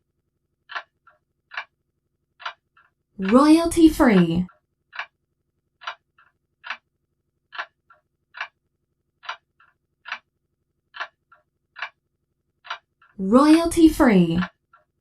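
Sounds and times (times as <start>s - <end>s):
clock ticking: 0.6s - 1.8s, 2.4s - 5.2s, 5.8s - 6.9s, 7.5s - 10.3s, 10.9s - 12.0s, 12.6s - 14.9s.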